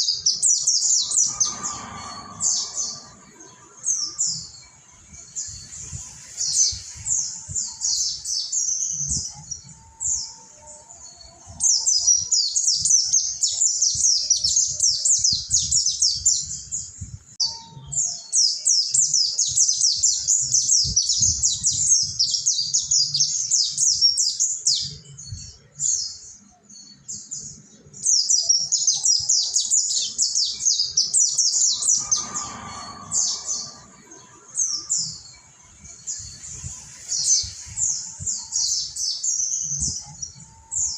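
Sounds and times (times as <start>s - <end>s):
birds twittering chirps: 0.0s - 40.9s.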